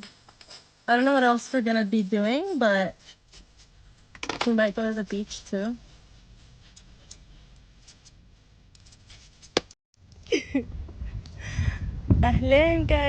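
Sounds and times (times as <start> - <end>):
person's voice: 4.4 - 5.8.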